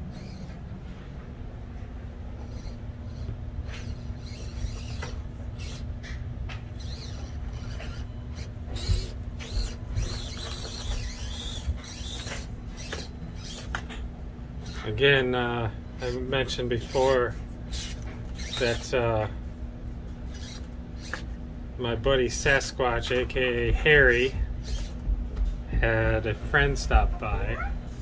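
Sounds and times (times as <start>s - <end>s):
rc truck electric motor: 0.0s - 0.6s, 2.4s - 14.0s, 14.6s - 15.1s, 15.9s - 19.2s, 20.2s - 21.4s, 23.9s - 25.0s.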